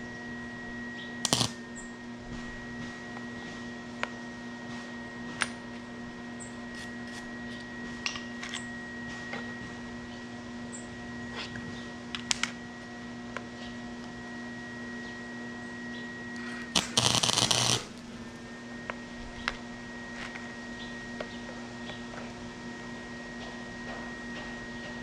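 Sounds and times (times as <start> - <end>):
electrical hum: 0.0 - 25.0
welder crackling sizzle: 1.2 - 1.7, 16.5 - 18.5.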